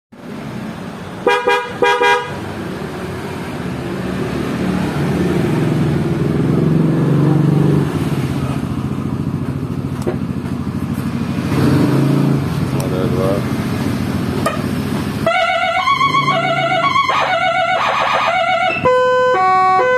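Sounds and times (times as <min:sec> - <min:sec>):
motorcycle engine running: 0:03.6 - 0:17.2.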